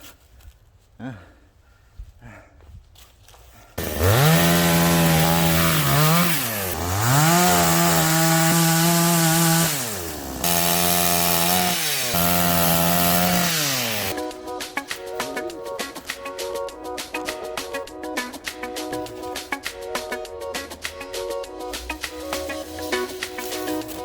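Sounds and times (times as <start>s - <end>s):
chainsaw running at high revs: 3.8s - 14.2s
music: 14.1s - 24.0s.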